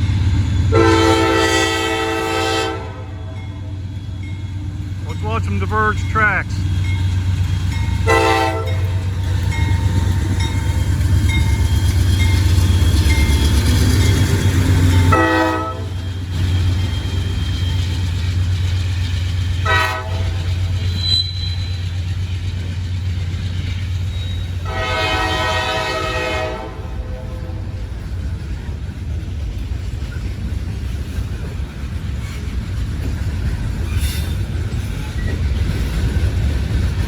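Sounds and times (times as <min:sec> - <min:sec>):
locomotive horn blasts: 0:00.7 - 0:03.4, 0:08.0 - 0:09.0, 0:15.1 - 0:16.0, 0:19.6 - 0:20.5, 0:24.6 - 0:27.6.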